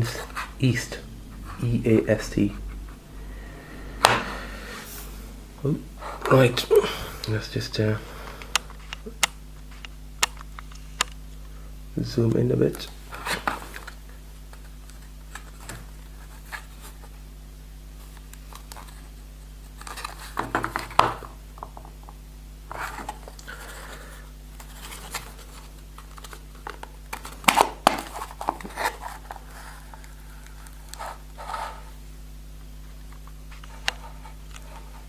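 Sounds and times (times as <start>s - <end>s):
low hum: 0.0s - 10.1s.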